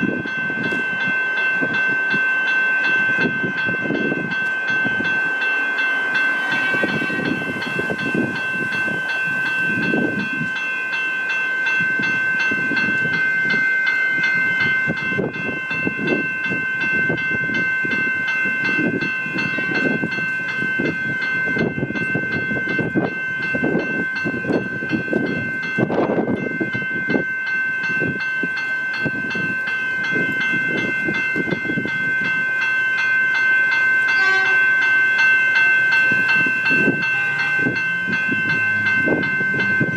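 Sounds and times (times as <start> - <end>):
level crossing warning bells: 0.0 - 39.9
train wheels clattering on rails: 33.4 - 39.9.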